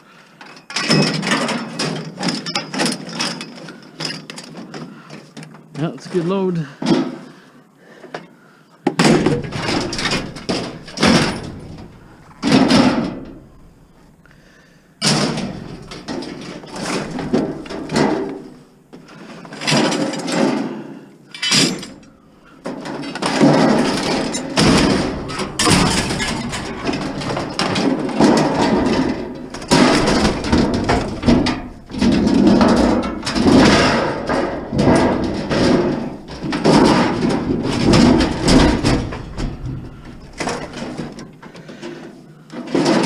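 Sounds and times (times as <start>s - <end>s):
scrap metal clattering: 9.0s - 43.0s.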